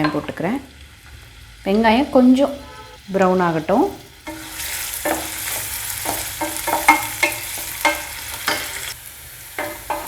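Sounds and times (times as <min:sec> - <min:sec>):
onions sizzling in hot oil: 0:00.0 - 0:10.0
utensil scraping a pan: 0:02.4 - 0:03.3.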